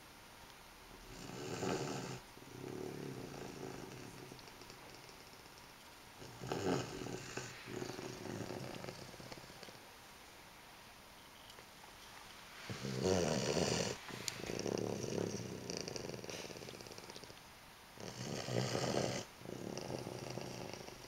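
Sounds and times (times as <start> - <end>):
dog snoring: 1.0 - 9.9, 12.6 - 17.4, 18.0 - 21.0
dog breathing softly: 12.5 - 17.4.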